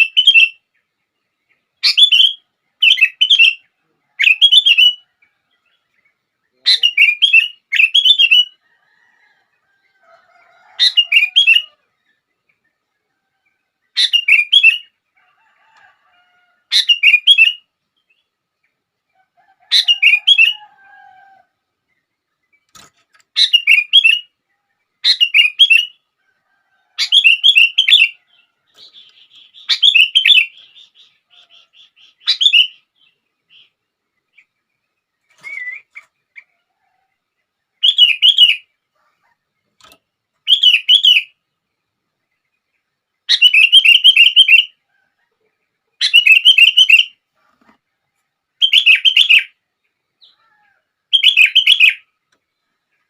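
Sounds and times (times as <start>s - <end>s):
bulbul singing: 0.0s - 8.6s, 13.5s - 15.0s, 21.9s - 24.4s, 25.0s - 26.1s, 27.0s - 34.6s, 37.8s - 38.8s, 39.8s - 41.4s, 43.2s - 44.8s, 46.0s - 47.2s, 51.1s - 52.1s
soft bird calls: 0.0s - 53.0s.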